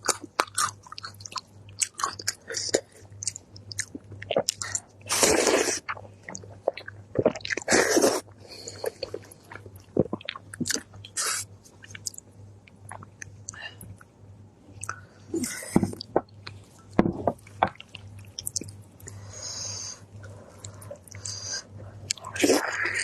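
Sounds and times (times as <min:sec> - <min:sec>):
crunchy bites and chewing: 0:00.0 - 0:07.8.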